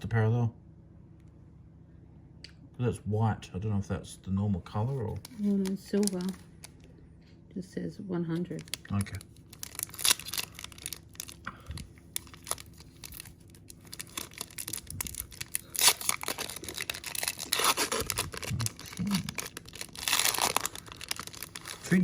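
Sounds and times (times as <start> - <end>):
foil wrapper crinkling: 4.8 - 6.9, 8.4 - 22.0
wrapper tearing: 4.9 - 6.8, 8.5 - 22.0.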